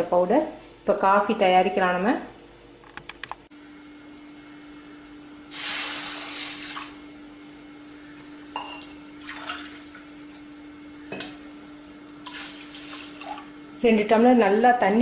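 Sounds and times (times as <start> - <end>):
water pouring into a pan: 5.5 - 7.0, 9.2 - 9.9, 12.2 - 13.6.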